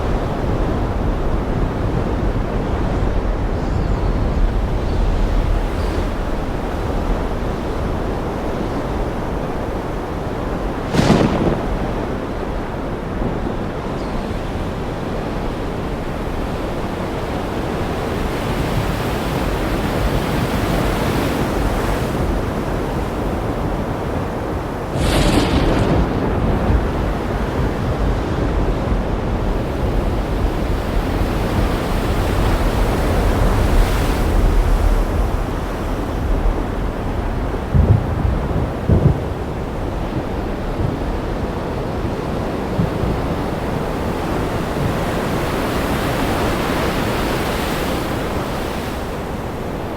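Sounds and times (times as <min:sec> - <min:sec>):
rolling thunder rumble: 0:00.0 - 0:14.8, 0:23.6 - 0:45.0
heavy rain: 0:00.0 - 0:16.4, 0:24.6 - 0:47.4
thunder cracks: 0:10.5 - 0:13.9, 0:24.7 - 0:31.7, 0:32.3 - 0:43.9.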